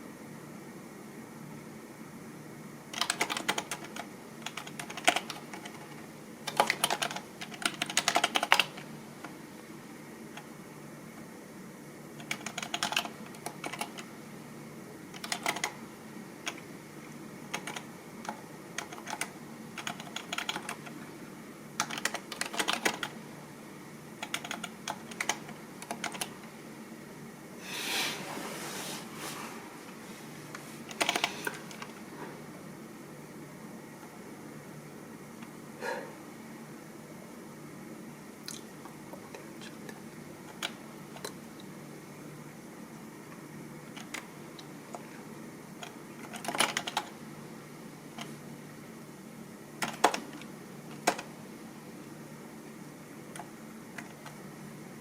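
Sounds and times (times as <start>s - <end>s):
typing on computer keyboard: 2.9s - 8.9s, 12.2s - 14.1s, 15.1s - 15.8s, 17.5s - 21.0s, 21.8s - 23.2s, 24.2s - 26.4s, 30.9s - 32.0s, 40.5s - 41.4s, 43.9s - 44.3s, 45.8s - 47.2s, 49.8s - 51.3s, 53.3s - 54.4s.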